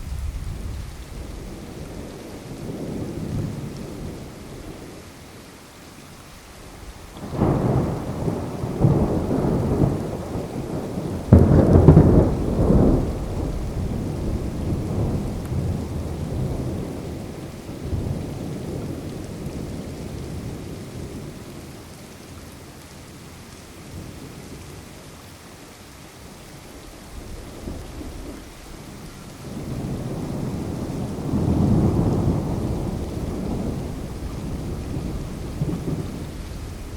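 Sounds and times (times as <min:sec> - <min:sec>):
thunder rolling: 0:00.0 - 0:02.0, 0:06.9 - 0:19.7, 0:29.5 - 0:36.9
steady rain: 0:00.0 - 0:36.9.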